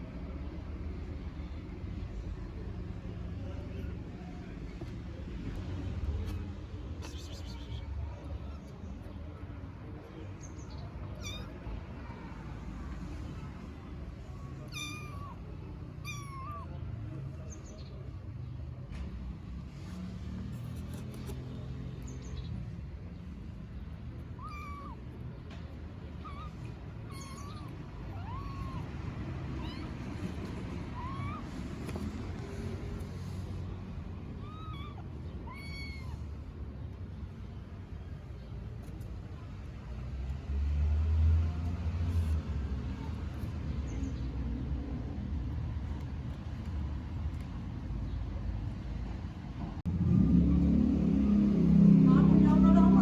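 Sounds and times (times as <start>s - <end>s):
kittens meowing: 6.2s - 9.1s, 10.7s - 12.4s, 13.4s - 17.1s, 23.5s - 37.6s.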